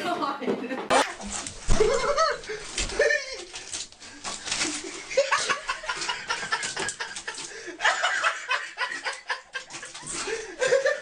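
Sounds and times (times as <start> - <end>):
person laughing: 1.8 - 3.6, 4.8 - 11.0.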